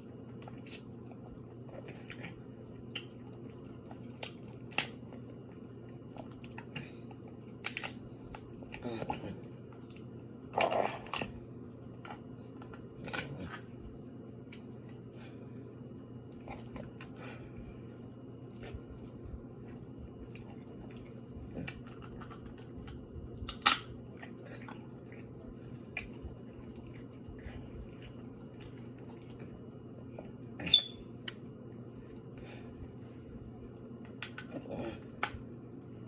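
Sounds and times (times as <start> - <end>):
low hum: 0.0 - 36.0
person chewing: 0.3 - 10.0, 16.2 - 17.8, 18.5 - 31.4.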